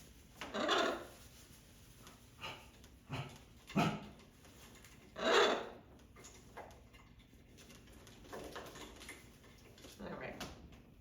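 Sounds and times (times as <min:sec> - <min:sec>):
parrot making harsh calls: 0:00.4 - 0:01.1, 0:05.2 - 0:05.8.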